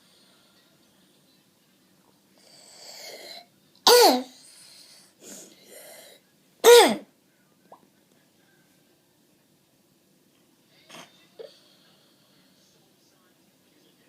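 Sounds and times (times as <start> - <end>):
child barking cough: 3.9 - 4.4, 6.6 - 7.0
noisy in-breath: 4.4 - 6.2.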